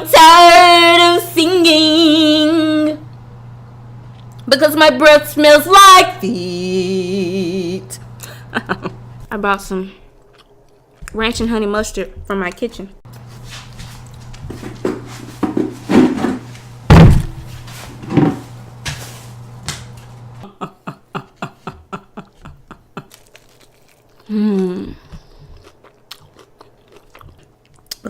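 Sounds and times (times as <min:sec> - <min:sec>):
low steady hum: 0:00.0 - 0:28.0
heavy thump: 0:15.4 - 0:17.5.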